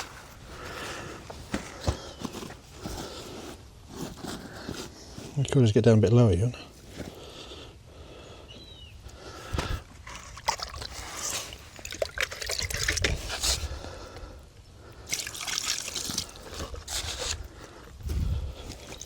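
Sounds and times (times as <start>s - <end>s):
water splashing and trickling: 10.0s - 13.3s, 15.1s - 17.1s.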